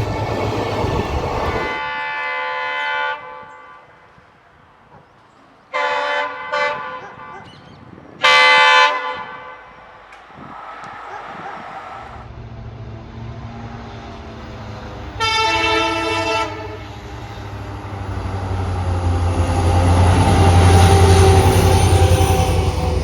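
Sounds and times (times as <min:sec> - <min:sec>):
train rumble: 0:00.0 - 0:02.6, 0:08.0 - 0:23.0
locomotive horn: 0:01.5 - 0:04.2, 0:05.7 - 0:07.6, 0:08.2 - 0:09.9, 0:15.1 - 0:23.0.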